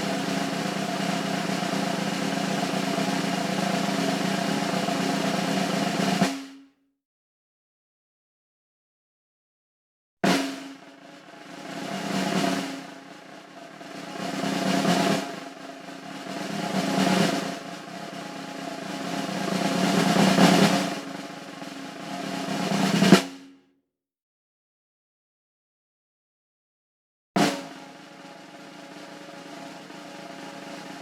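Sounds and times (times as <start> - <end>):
snare drum roll: 0.0 - 6.5, 10.3 - 23.4, 27.4 - 31.0
accented snare hit: 27.4 - 31.0.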